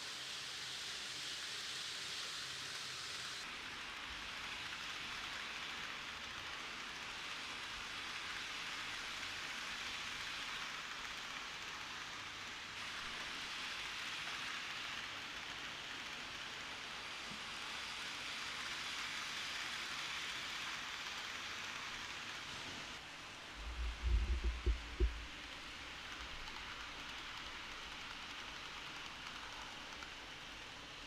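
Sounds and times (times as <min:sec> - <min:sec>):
steady hiss: 0:00.0 - 0:31.0
low thumps: 0:23.6 - 0:25.3.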